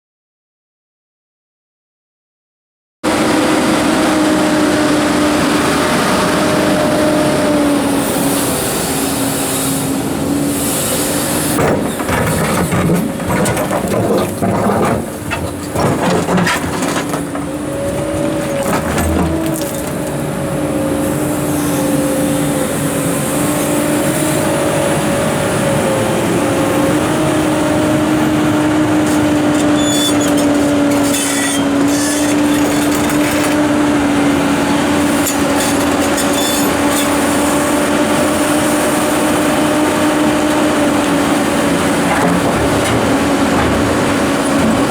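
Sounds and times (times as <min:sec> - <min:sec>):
excavator engine and hydraulics humming: 0:03.1 - 0:44.9
rocks clattering against steel: 0:11.6 - 0:20.1.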